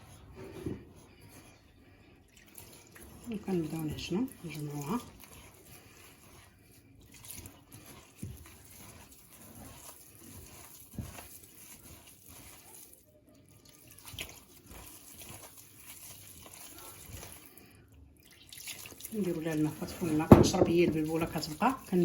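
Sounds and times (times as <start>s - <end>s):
hands mixing grains in a bowl: 0.0s - 22.0s.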